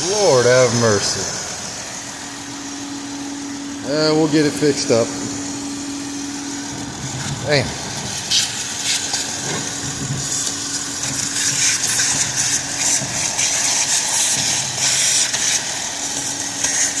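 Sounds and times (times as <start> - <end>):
car engine idling with misfire: 0.0 - 17.0
engine hiss: 0.0 - 17.0.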